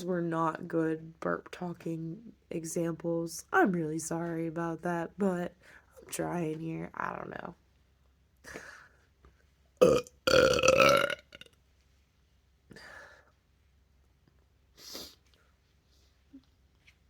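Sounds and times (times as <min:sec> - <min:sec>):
person burping: 0:09.8 - 0:11.5.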